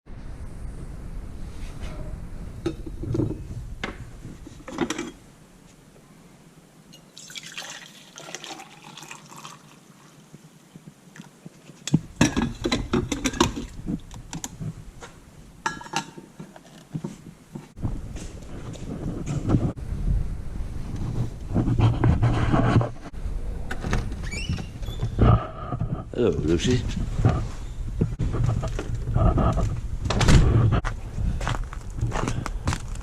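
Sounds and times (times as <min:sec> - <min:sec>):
liquid pouring and dripping: 0:07.0 - 0:10.4.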